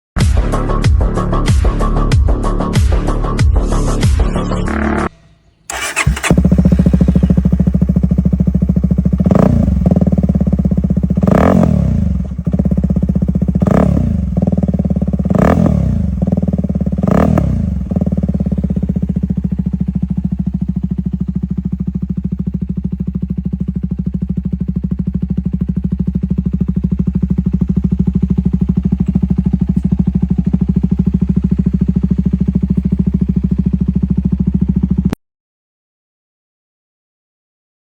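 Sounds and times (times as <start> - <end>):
motorcycle engine idling and revving: 5.7 - 35.2.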